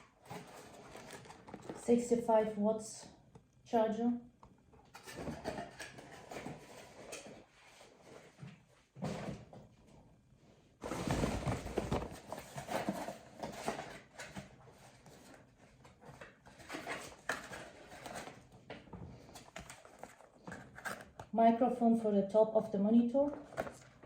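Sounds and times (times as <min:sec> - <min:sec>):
packaging rustling and knocking: 0:00.2 - 0:01.8, 0:10.8 - 0:14.5, 0:23.4 - 0:24.0.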